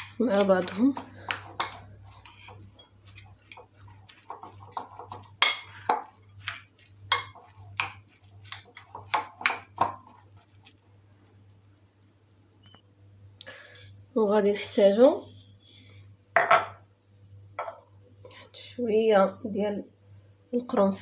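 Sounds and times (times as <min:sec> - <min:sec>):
spoon scraping against bowl: 0:00.0 - 0:10.6, 0:15.5 - 0:16.2.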